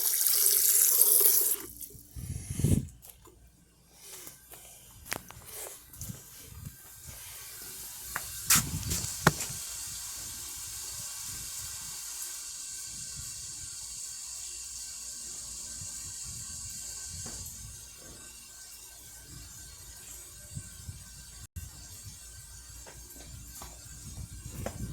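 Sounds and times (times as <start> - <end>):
water spraying: 7.0 - 18.0.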